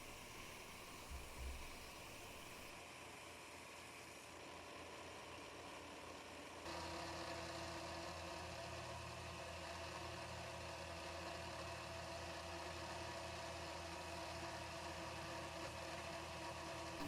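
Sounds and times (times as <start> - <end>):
electric motor humming: 0.0 - 2.7.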